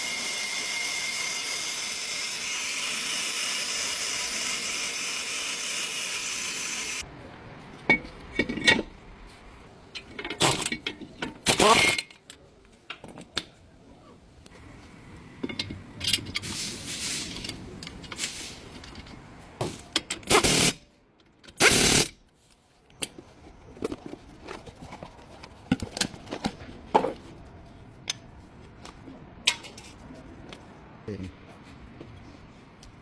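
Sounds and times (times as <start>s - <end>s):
hiss: 16.4s - 17.5s.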